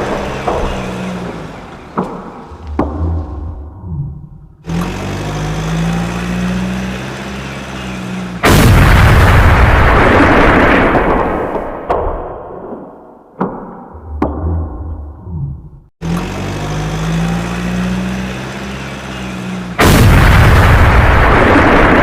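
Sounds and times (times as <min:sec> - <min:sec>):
low engine-like hum: 0:00.0 - 0:04.6
loud blast: 0:08.4 - 0:11.4, 0:19.8 - 0:22.0.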